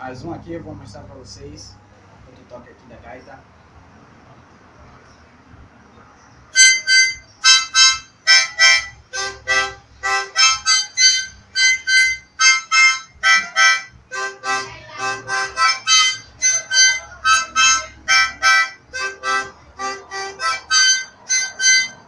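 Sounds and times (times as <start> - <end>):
harmonica chord blasts: 6.6 - 22.0.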